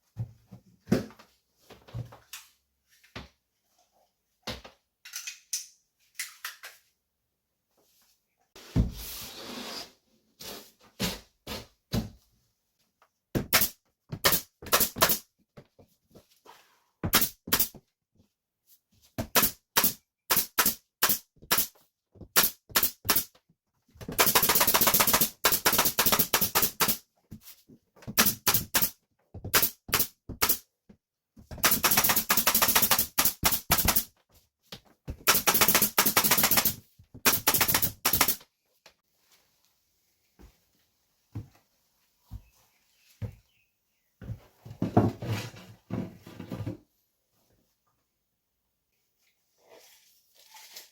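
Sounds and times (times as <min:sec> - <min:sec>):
pneumatic nail gun firing: 0:13.5 - 0:15.2, 0:17.1 - 0:17.7, 0:19.3 - 0:21.7, 0:22.4 - 0:23.3, 0:24.2 - 0:27.0, 0:28.2 - 0:28.9, 0:29.5 - 0:30.6, 0:31.6 - 0:34.1, 0:35.3 - 0:38.4.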